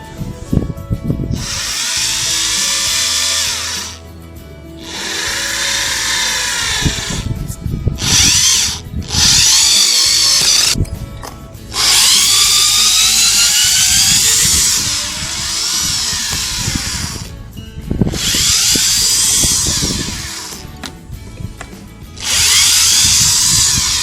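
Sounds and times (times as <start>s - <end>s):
power screwdriver motor whining: 1.4s - 4.1s, 4.8s - 7.4s, 8.0s - 10.8s, 11.8s - 17.3s, 18.2s - 20.9s, 22.2s - 24.0s.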